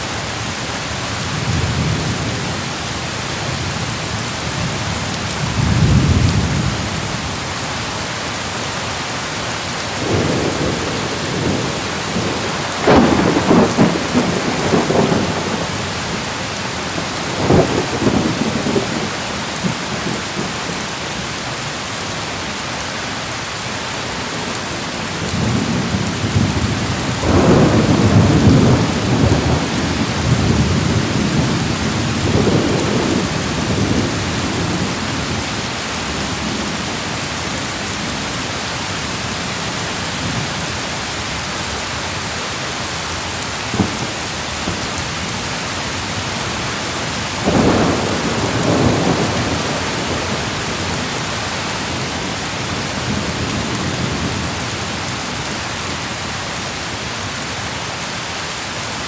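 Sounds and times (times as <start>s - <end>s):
rain hissing: 0.0s - 58.3s
sharp thunder crack: 10.0s - 15.8s
thunder rolling: 10.0s - 20.6s, 25.2s - 35.5s, 47.4s - 51.2s.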